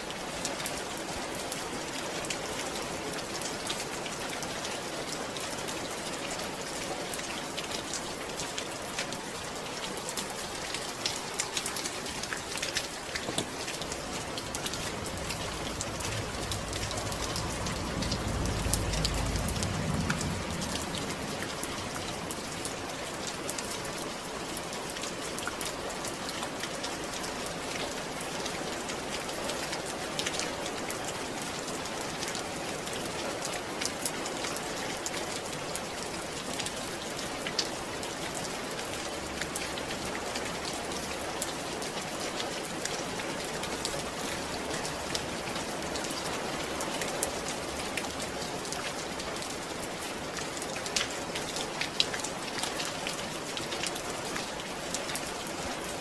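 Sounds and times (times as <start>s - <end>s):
steady rain falling: 0.0s - 56.0s
raindrops ticking: 7.6s - 31.0s
low rumble: 14.0s - 22.4s.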